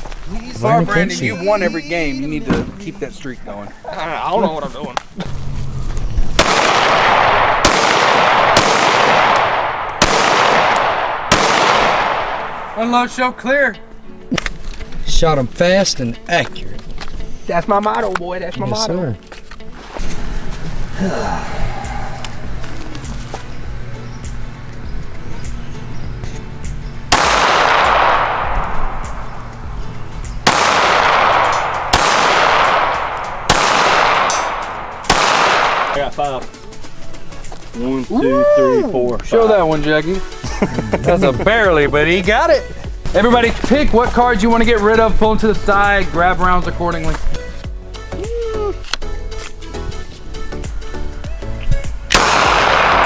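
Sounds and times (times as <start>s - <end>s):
pistol shots echoing: 6.4s - 13.3s, 27.1s - 36.2s, 52.1s - 53.0s.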